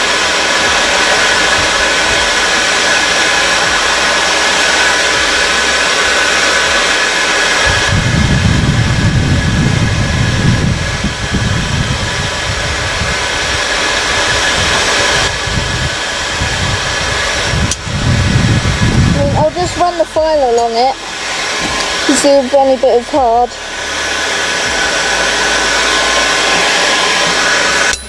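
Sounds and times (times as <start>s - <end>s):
air blower hissing with whine: 0.0s - 28.0s
low uneven rumble: 7.7s - 26.5s.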